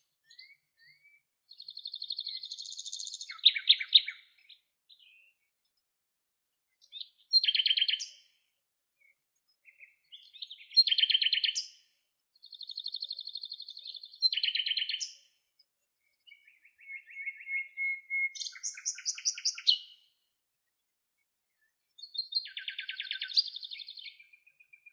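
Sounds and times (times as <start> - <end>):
songbirds trilling: 0.3 - 5.4, 16.2 - 19.9.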